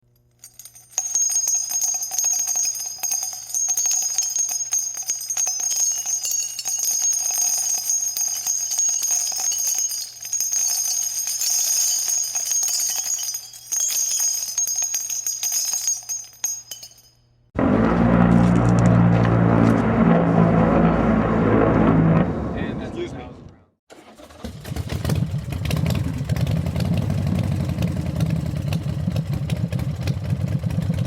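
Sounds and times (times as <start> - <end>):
jingle bells shaken: 0.4 - 17.2.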